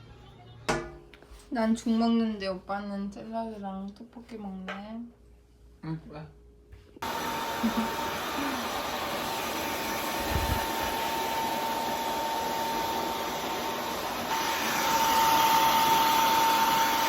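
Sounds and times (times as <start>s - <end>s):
electric fan whooshing with whine: 7.0s - 17.0s.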